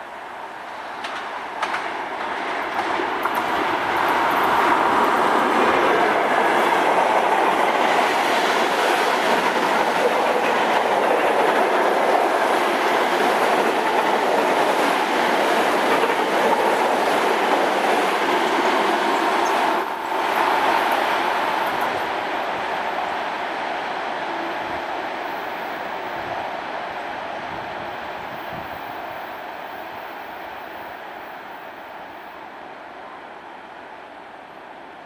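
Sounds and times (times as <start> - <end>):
train wheels on track: 0.0 - 35.0.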